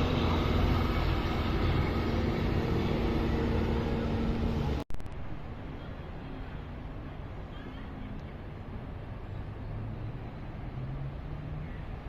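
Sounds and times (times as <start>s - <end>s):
engine hum: 0.0s - 4.8s
quiet outdoor background: 0.0s - 12.0s
road traffic rumble: 0.0s - 12.0s.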